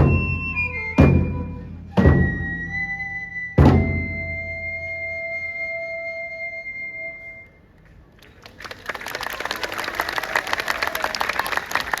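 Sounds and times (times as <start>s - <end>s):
bamboo flute note: 0.0s - 7.8s
audience applause: 8.2s - 12.0s.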